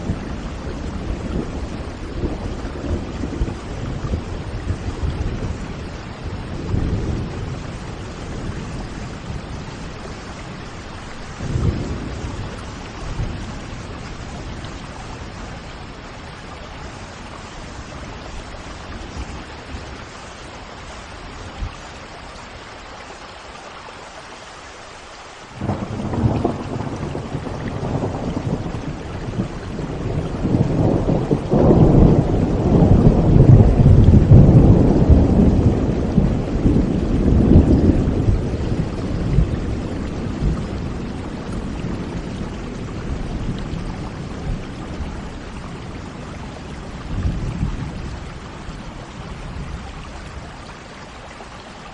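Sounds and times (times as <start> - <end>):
low rolling thunder: 0.0 - 20.2, 25.6 - 50.5
steady rain falling: 0.0 - 51.9.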